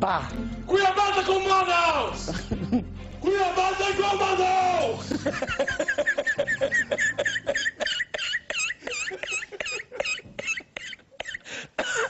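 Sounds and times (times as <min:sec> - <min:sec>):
man laughing high-pitched: 0:05.1 - 0:12.0.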